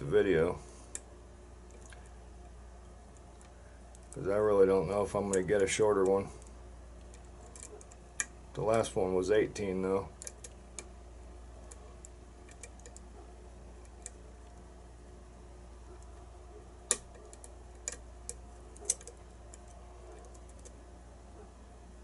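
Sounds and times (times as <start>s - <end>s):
faint low hum: 0.0s - 22.0s
lock pick metallic clicks: 16.9s - 20.7s.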